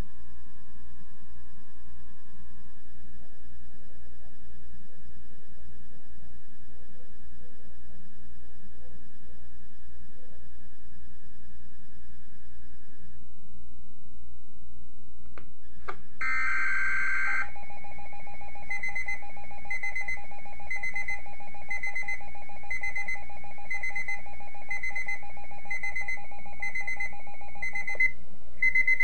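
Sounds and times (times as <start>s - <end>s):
digital data tones: 16.2s - 29.0s
steady alarm tone with beeps: 16.2s - 29.0s.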